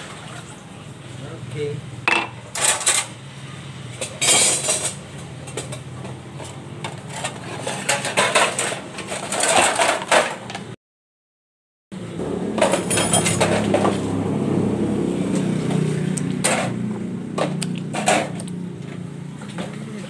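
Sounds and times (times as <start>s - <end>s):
dishes and cutlery clattering: 2.1s - 3.2s, 4.0s - 10.5s, 12.6s - 14.0s.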